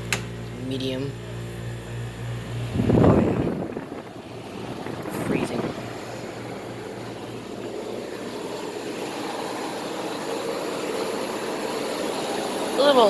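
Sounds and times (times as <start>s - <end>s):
air conditioner running: 0.0s - 13.0s.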